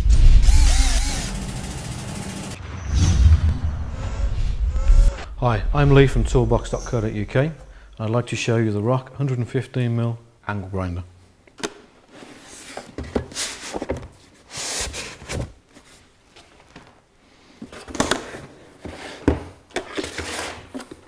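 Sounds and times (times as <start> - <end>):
rubbing and rustling: 12.0 - 17.0.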